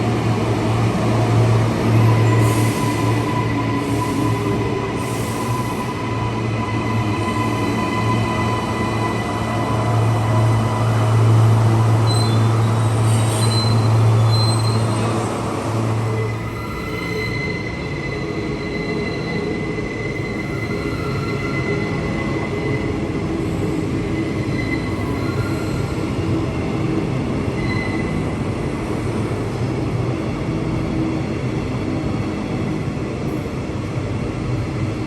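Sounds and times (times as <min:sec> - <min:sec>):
train rumbling: 0:00.0 - 0:35.0.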